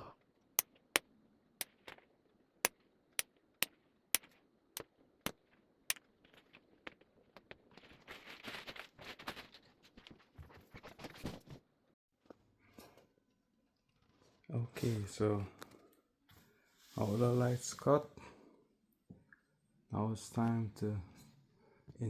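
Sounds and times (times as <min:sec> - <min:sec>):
rustling handling: 0:05.5 - 0:11.7.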